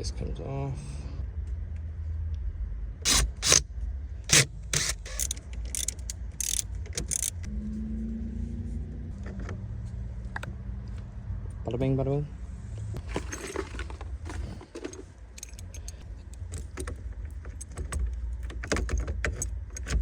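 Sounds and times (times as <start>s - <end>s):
parts clicking and clacking: 4.3s - 7.5s, 13.0s - 20.0s.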